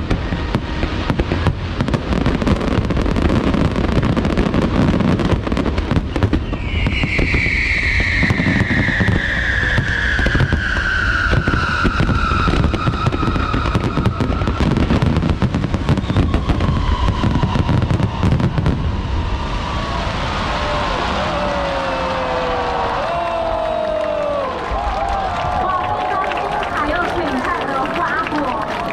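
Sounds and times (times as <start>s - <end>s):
fireworks crackling and bangs: 0.0s - 28.9s
high tone sliding down: 6.5s - 13.0s.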